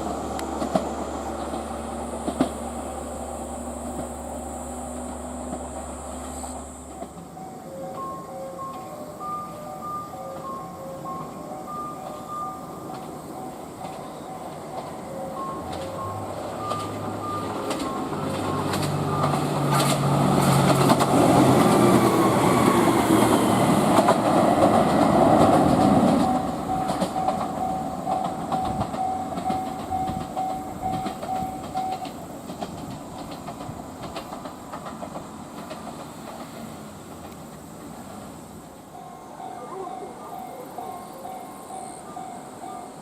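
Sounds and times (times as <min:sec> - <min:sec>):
train wheels rumbling on rails: 0:00.0 - 0:43.0.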